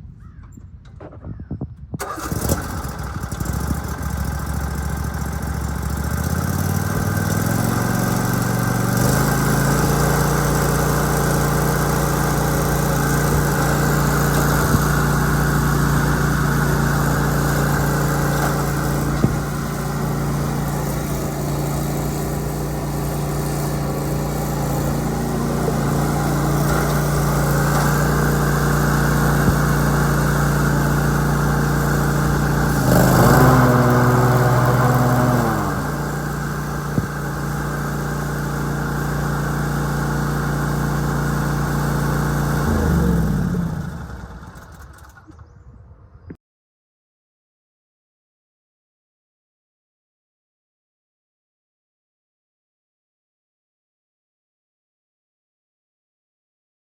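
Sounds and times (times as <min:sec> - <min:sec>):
riding lawn mower engine: 0:02.0 - 0:45.6.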